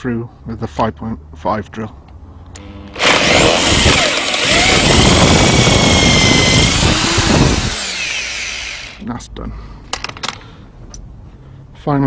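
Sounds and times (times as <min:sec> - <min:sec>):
power drill whining: 0:02.6 - 0:09.0.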